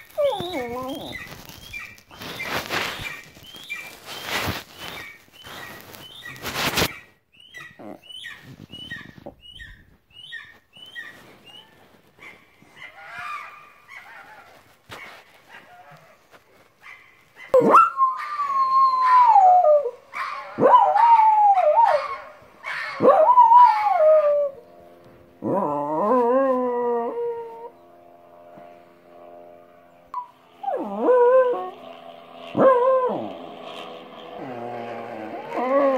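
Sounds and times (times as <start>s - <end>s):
dog howling: 0.0s - 2.0s, 17.5s - 24.6s, 25.4s - 27.7s, 30.2s - 31.8s, 32.5s - 33.5s, 34.4s - 35.9s.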